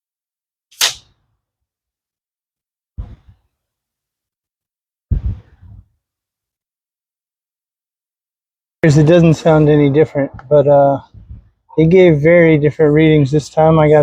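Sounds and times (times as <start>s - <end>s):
air rifle shot: 0.8s - 1.2s
dull low thumps: 3.0s - 3.4s, 5.1s - 5.9s, 8.8s - 12.4s.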